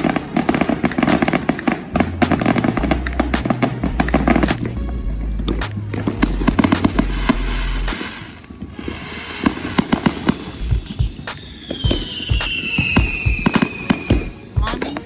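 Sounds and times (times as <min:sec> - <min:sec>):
fireworks bangs and crackles: 0:00.0 - 0:04.7, 0:05.5 - 0:15.0
music with heavy bass: 0:00.0 - 0:08.0, 0:10.6 - 0:15.0
high whistle gliding downward: 0:06.9 - 0:14.6.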